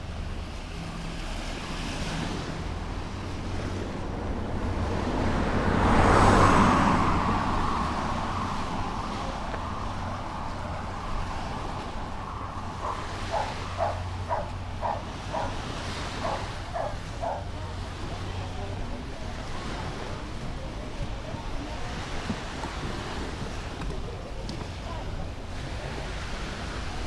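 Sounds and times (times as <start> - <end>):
dog barking: 12.8 - 15.6, 16.2 - 17.5.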